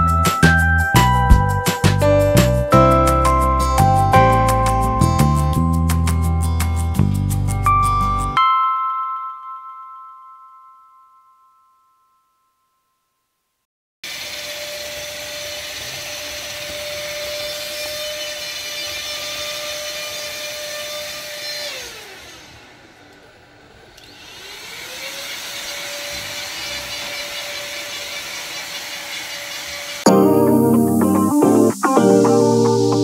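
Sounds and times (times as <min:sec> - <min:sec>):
small electric motor whirring: 0:14.1 - 0:22.9, 0:23.9 - 0:30.1.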